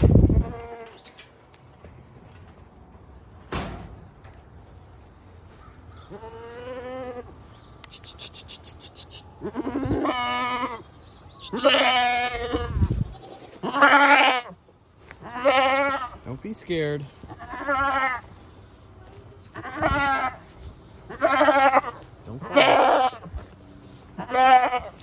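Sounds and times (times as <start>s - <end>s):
goats bleating: 6.1s - 7.4s, 8.0s - 14.6s, 15.2s - 16.3s, 17.0s - 18.4s, 19.5s - 20.5s, 21.1s - 25.0s.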